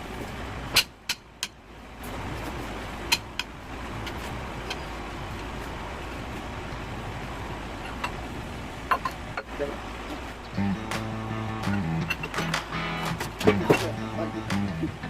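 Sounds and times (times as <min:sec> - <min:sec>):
steady background rumble: 0:00.0 - 0:15.0
sharp clicks or knocks: 0:10.9 - 0:14.7.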